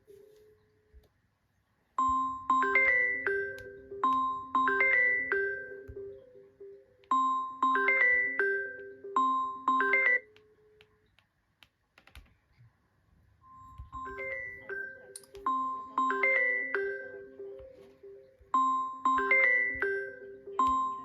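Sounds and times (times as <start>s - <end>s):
chiming phone ringtone: 2.0s - 10.7s, 13.5s - 21.0s.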